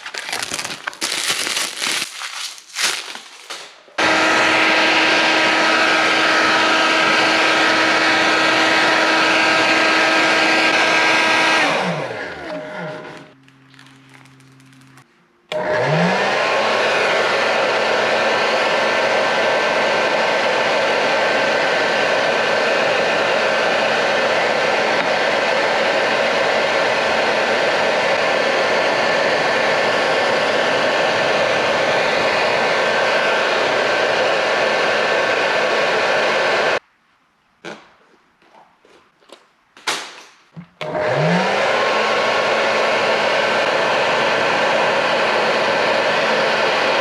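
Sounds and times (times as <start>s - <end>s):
heat gun fan whine: 14.3s - 36.8s, 40.8s - 47.0s.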